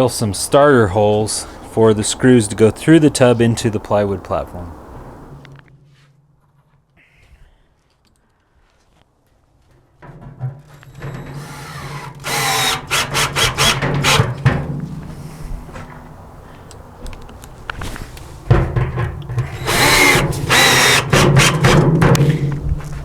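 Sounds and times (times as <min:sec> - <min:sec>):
power drill boring through metal: 0:11.0 - 0:14.4, 0:19.4 - 0:22.1.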